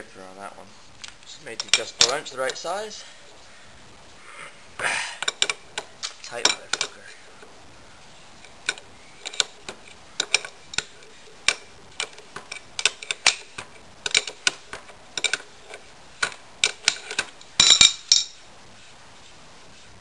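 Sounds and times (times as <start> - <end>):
metal clatter: 8.6 - 18.4.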